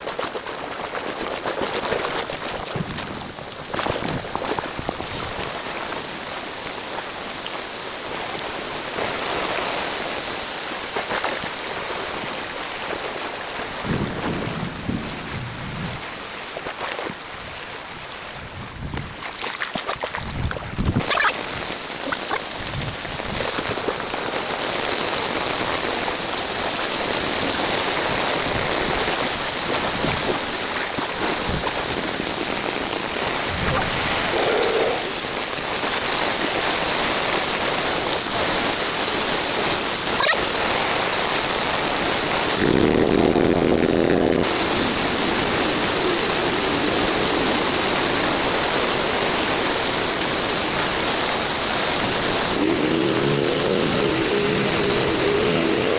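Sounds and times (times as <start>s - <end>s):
heavy rain: 0.0s - 19.2s, 20.2s - 55.9s
low rumbles: 52.0s - 55.9s.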